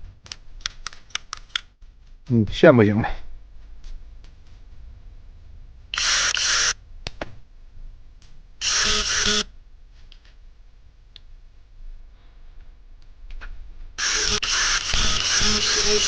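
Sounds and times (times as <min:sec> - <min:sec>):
electric power tool motor: 0:05.9 - 0:06.8, 0:08.6 - 0:09.5, 0:14.0 - 0:16.0.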